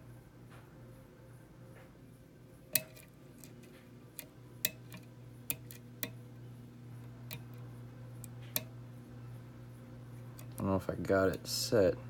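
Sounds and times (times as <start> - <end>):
steady low hum: 0.0 - 12.0
lock pins clicking: 2.7 - 6.3.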